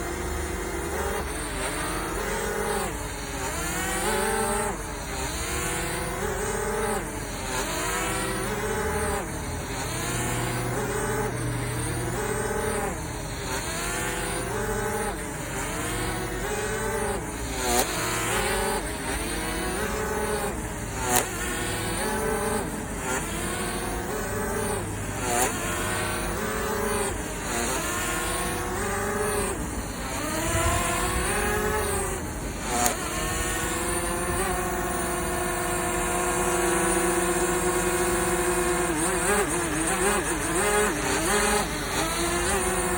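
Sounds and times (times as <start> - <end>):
drone propellers whining: 0.0 - 42.9.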